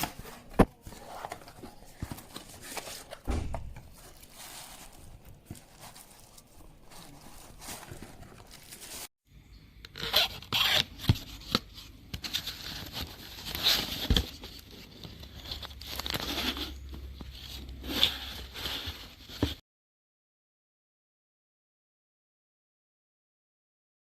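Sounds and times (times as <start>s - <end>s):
scraping and rustling: 0.0s - 9.1s, 10.2s - 19.6s.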